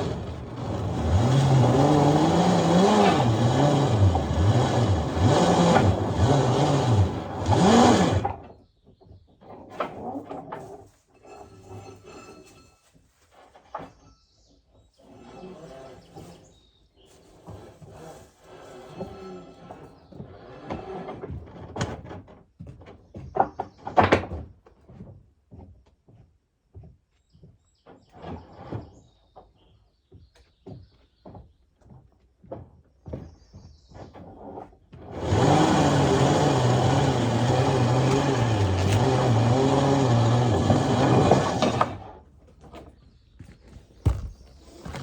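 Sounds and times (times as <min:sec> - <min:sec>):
motor running loudly: 0:00.0 - 0:08.4, 0:35.1 - 0:42.1, 0:44.0 - 0:45.0
knocks and clunks: 0:37.4 - 0:45.0.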